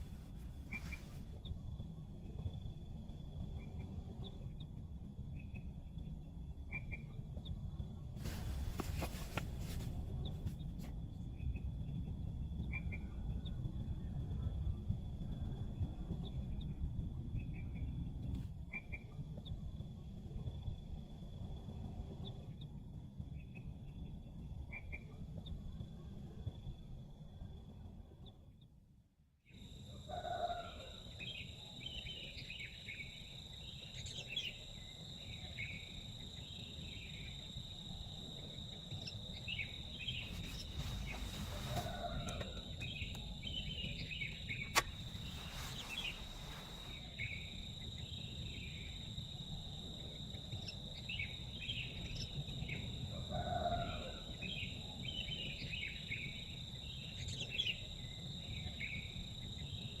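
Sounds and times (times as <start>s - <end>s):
insects droning: 29.5s - 60.0s.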